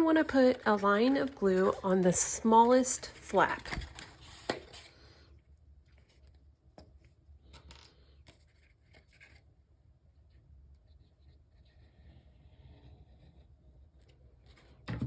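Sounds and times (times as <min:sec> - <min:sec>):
cardstock rustling: 0:00.0 - 0:05.0.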